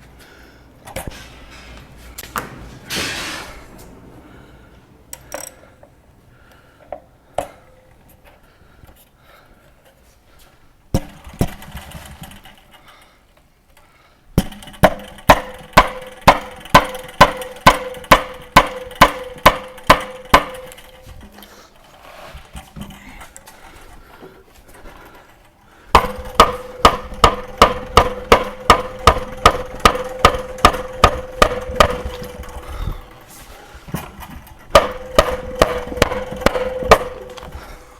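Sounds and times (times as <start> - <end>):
impact wrench hammering: 10.9 - 12.6, 14.4 - 21.5, 25.9 - 33.3, 33.9 - 37.8.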